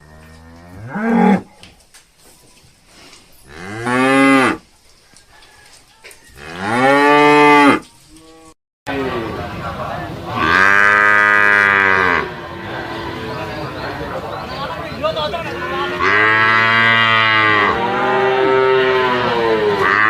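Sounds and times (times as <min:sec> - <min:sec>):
water buffalo mooing: 0:00.0 - 0:01.5, 0:10.3 - 0:13.8, 0:15.5 - 0:20.0.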